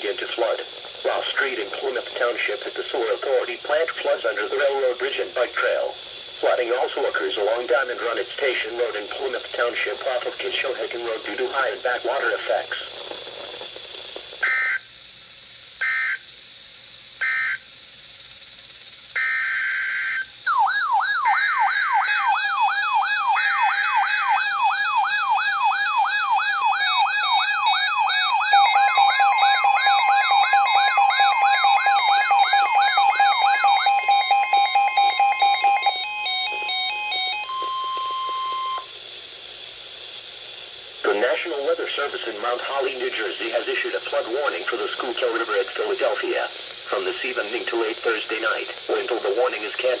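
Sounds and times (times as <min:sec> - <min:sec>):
screeching data bursts: 0:00.0 - 0:50.0
fast warbling alarm: 0:14.4 - 0:14.9, 0:15.8 - 0:16.3, 0:17.2 - 0:17.7, 0:19.2 - 0:39.0
steady attention tone: 0:19.1 - 0:50.0
beeping alarm tones: 0:19.2 - 0:38.9.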